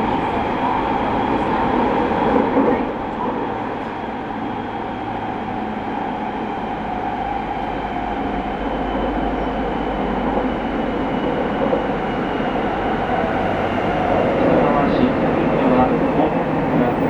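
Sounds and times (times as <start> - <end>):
electric train rumbling from inside: 0.0 - 17.0.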